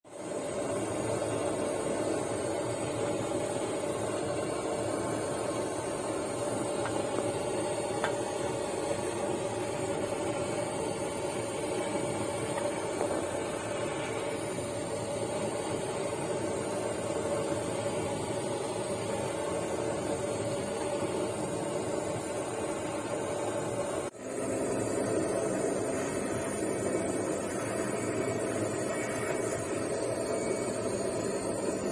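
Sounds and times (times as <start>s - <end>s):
gas torch flame hissing: 0.1s - 31.9s.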